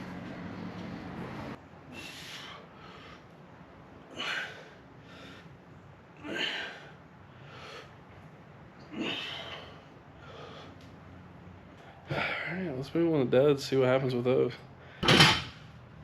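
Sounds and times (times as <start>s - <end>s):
man breathing hard: 1.9s - 3.4s, 4.1s - 5.6s, 6.2s - 8.0s, 9.0s - 10.9s.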